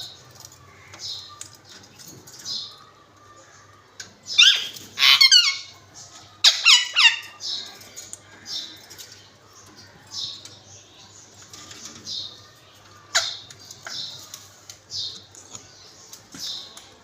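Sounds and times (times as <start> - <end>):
parrots squawking: 4.3 - 5.8, 6.4 - 7.5, 13.1 - 13.5.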